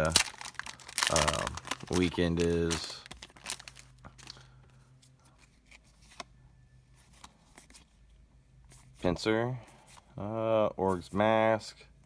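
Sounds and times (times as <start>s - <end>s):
trading cards rustling and clicking: 0.0s - 6.3s.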